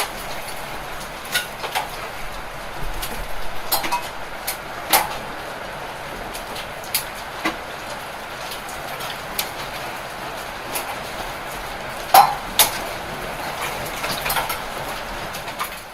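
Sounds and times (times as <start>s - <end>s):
hailstones hitting hard objects: 0.0s - 15.9s
steady hiss of rain: 0.0s - 15.9s.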